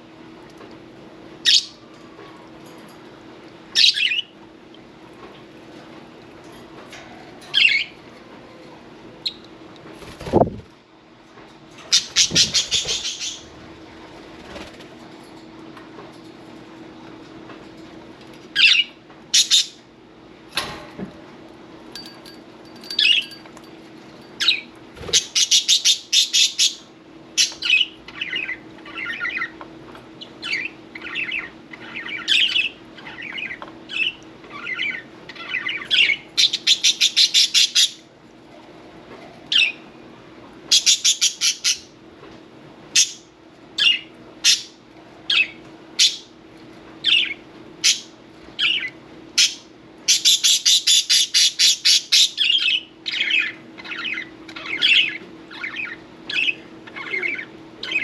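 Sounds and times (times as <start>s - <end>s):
budgerigars chirping: 12.0s - 13.4s, 47.1s - 58.0s.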